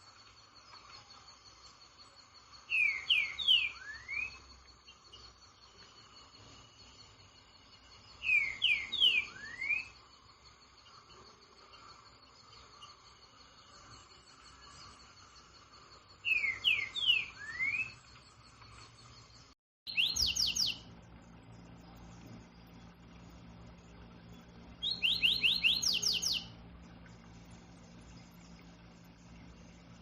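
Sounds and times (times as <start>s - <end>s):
high insect drone: 0.0s - 24.5s
songbird whistled phrase: 2.7s - 4.5s, 8.2s - 9.9s, 16.3s - 18.0s, 19.9s - 20.8s, 24.8s - 26.5s.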